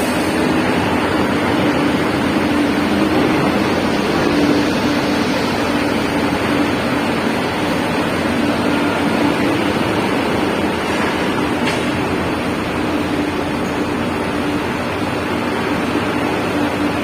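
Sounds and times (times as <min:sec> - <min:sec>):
loud rushing noise: 0:00.0 - 0:13.6
bus engine humming: 0:00.0 - 0:17.0.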